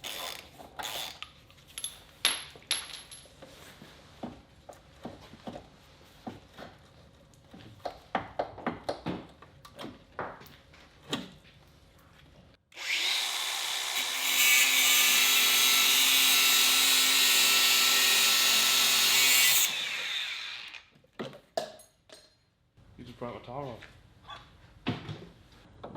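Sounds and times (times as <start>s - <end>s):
parts clinking and knocking: 0.4s - 3.5s, 21.2s - 22.5s
power tool running: 12.7s - 20.9s.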